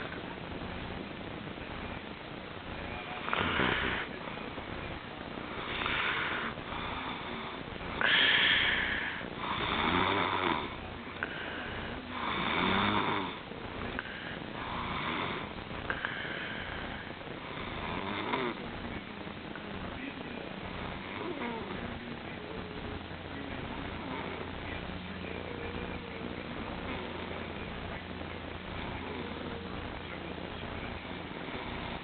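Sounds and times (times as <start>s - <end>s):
person snoring: 3.2s - 4.2s, 5.5s - 13.4s, 14.0s - 18.7s.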